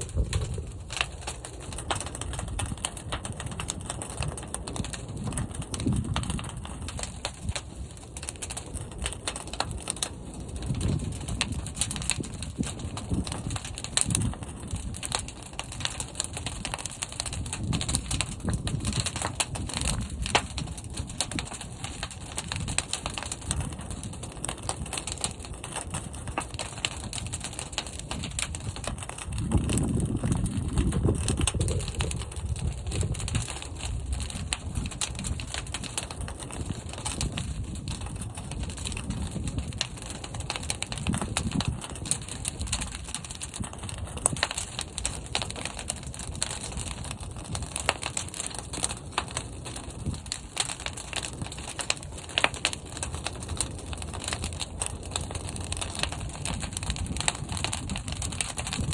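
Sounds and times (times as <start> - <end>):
fire crackling: 0.0 - 58.9
fire rumbling in kiln: 0.0 - 58.9.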